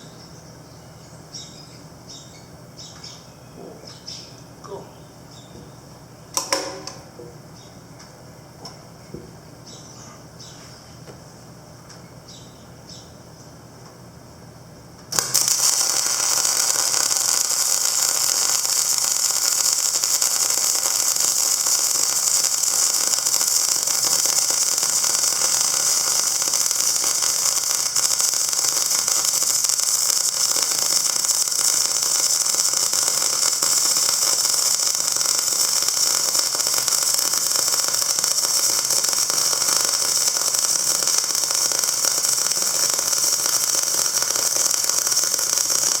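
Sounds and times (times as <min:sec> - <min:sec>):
loud steady hiss: 0:15.1 - 0:46.0.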